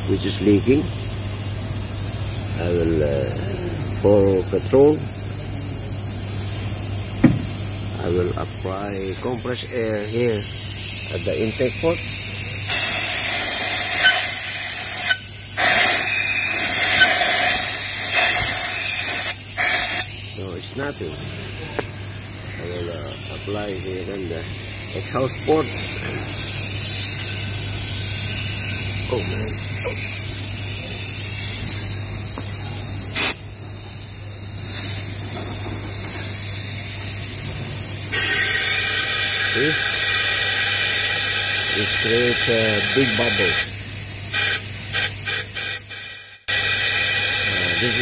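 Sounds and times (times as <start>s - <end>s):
compressed air hissing: 0.4s - 33.4s, 34.4s - 48.0s.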